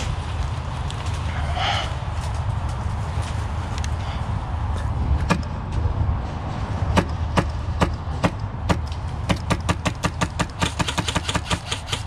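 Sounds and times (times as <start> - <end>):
airsoft rifle shots: 7.0 - 12.0.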